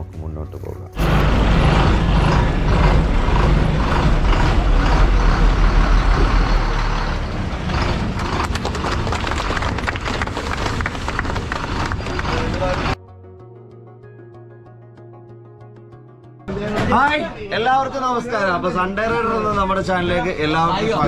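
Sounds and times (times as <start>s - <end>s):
diesel bus engine rumbling: 1.0s - 13.0s.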